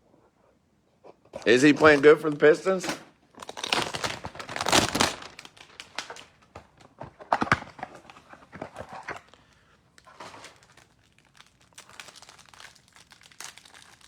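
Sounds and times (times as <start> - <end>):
cards clicking and rustling: 1.4 - 9.4
foil wrapper crinkling: 1.4 - 14.0.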